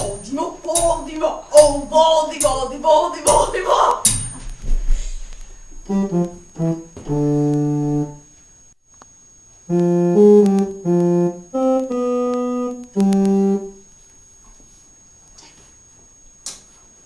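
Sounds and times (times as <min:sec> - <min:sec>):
electronic keyboard notes: 0:05.8 - 0:08.3, 0:09.7 - 0:13.8.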